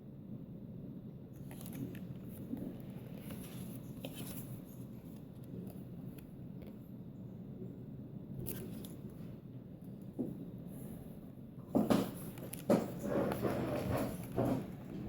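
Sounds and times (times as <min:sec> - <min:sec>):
book pages and flaps turning: 0:01.4 - 0:06.8, 0:08.4 - 0:09.1, 0:11.9 - 0:15.0.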